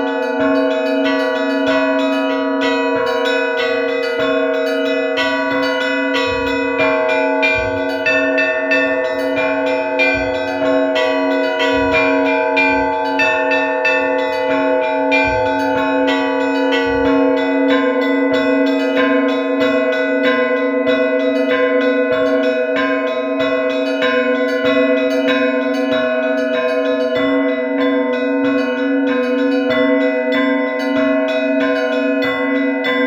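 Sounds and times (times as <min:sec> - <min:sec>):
deep bell stroke: 0:00.0 - 0:26.1
church bells ringing: 0:00.0 - 0:33.0.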